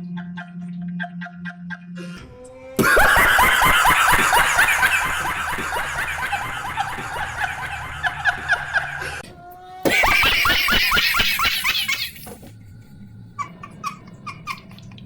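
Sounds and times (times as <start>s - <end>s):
man laughing in high squeals: 2.8s - 9.2s, 9.8s - 12.5s.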